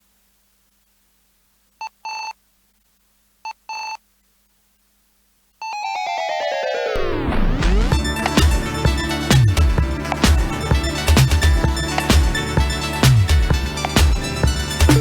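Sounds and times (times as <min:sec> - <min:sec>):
electronic beeps: 0:05.6 - 0:09.6
electronic music intro: 0:05.7 - 0:15.0.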